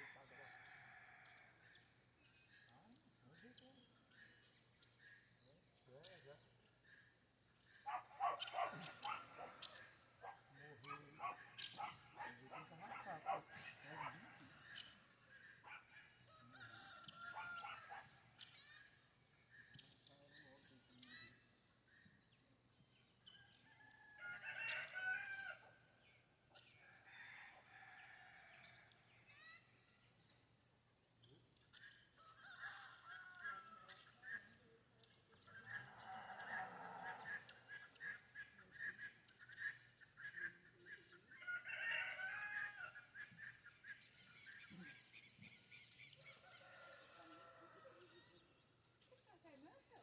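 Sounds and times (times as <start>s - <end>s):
small birds chirping: 0.0s - 50.0s
rooster crowing: 16.3s - 18.0s, 23.6s - 25.7s, 32.2s - 34.1s, 35.8s - 37.6s, 41.4s - 43.0s, 46.4s - 48.2s.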